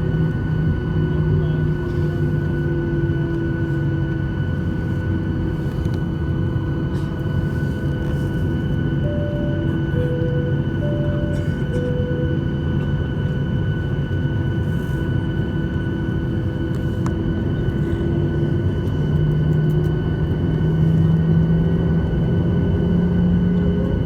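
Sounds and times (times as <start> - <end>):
jet engines rumbling in cabin: 0.0 - 24.0.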